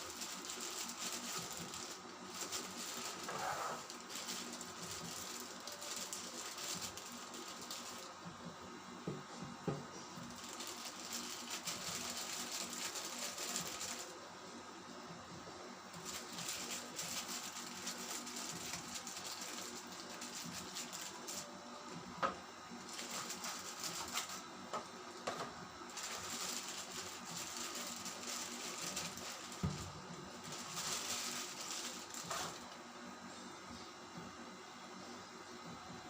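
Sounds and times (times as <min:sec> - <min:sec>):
plastic and cardboard rustling: 0:00.0 - 0:08.2, 0:10.2 - 0:14.2, 0:16.0 - 0:21.5, 0:22.8 - 0:32.8.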